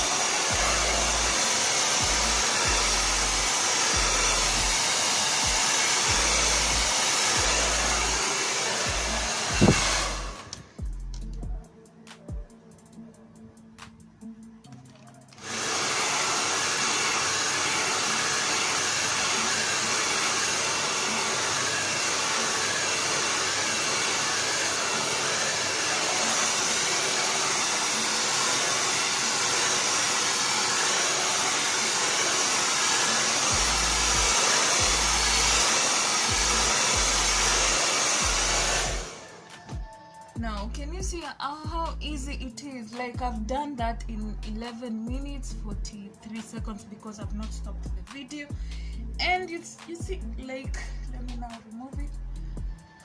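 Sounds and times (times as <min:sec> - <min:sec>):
blow dryer rushing hiss: 0:00.0 - 0:10.9, 0:15.4 - 0:40.0.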